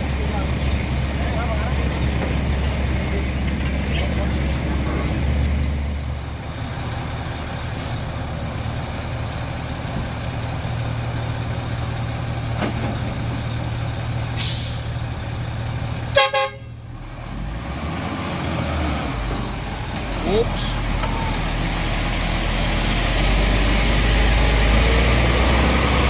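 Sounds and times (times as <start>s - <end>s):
heavy diesel engines running: 0.0s - 26.0s
horn toot: 16.1s - 16.7s.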